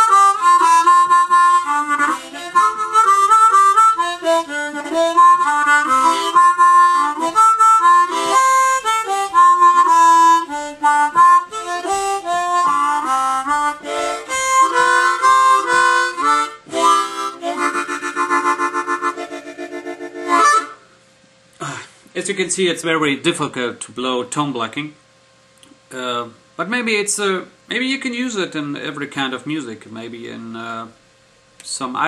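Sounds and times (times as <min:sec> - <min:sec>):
harmonica melody: 0:00.0 - 0:20.9.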